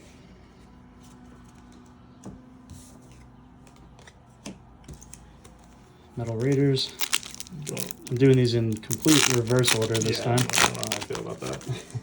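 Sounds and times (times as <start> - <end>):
card packs rustling: 6.2 - 12.0.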